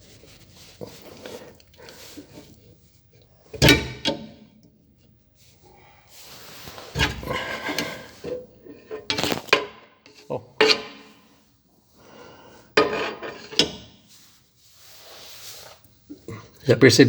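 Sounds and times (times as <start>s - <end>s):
wrenches scraping and clanking on metal: 6.5s - 11.3s, 12.8s - 14.1s.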